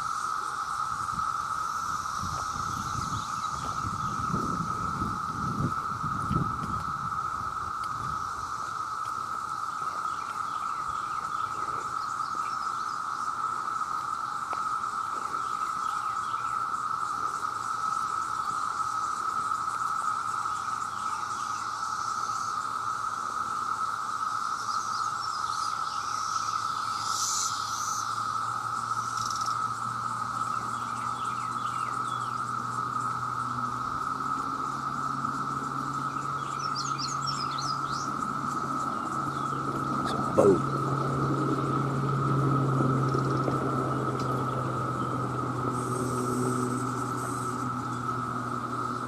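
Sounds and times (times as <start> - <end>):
cicadas droning: 0.0 - 49.0
birds chirping: 36.1 - 40.9.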